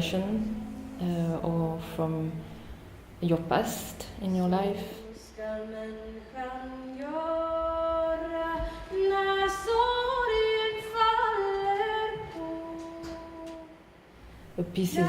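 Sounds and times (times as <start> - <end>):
woman singing slow melody: 0.0 - 2.4, 4.8 - 13.9, 14.6 - 15.0.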